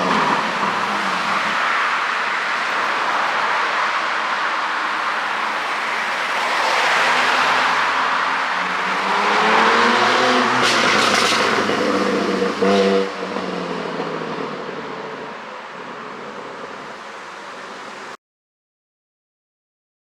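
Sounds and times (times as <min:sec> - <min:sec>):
road and wind noise: 0:00.0 - 0:18.2
sports car engine accelerating: 0:05.3 - 0:18.1.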